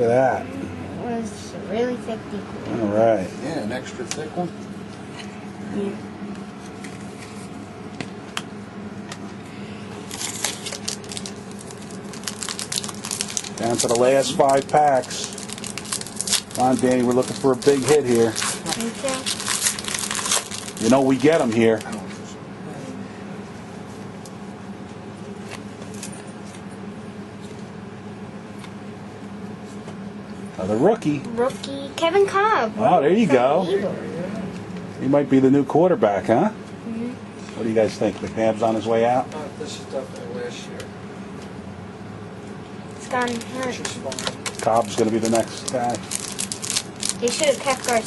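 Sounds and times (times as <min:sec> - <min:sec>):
low background hum: 0:00.0 - 0:48.0
trading cards crinkling and rustling: 0:10.0 - 0:22.1, 0:43.0 - 0:48.0.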